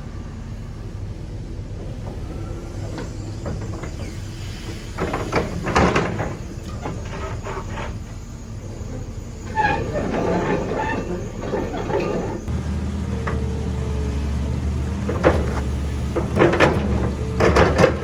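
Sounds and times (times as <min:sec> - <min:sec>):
excavator diesel engine rumbling: 0:00.0 - 0:18.0
metallic clanks and knocks: 0:05.0 - 0:08.0, 0:15.1 - 0:18.0.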